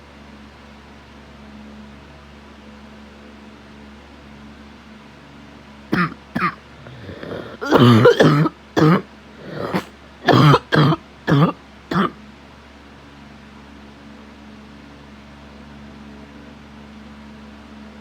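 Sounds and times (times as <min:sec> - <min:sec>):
person coughing: 0:05.9 - 0:12.2
person breathing in: 0:06.8 - 0:08.2, 0:09.4 - 0:09.9.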